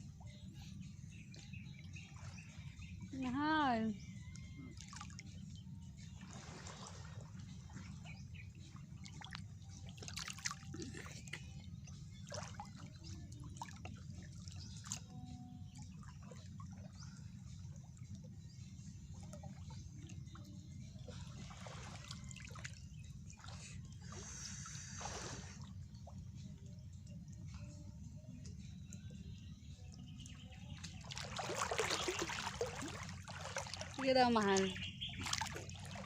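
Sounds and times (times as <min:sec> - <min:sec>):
steady low rumble: 0:00.0 - 0:31.4
water trickling and dripping: 0:00.0 - 0:36.0
small splashes and clicks: 0:30.8 - 0:36.0.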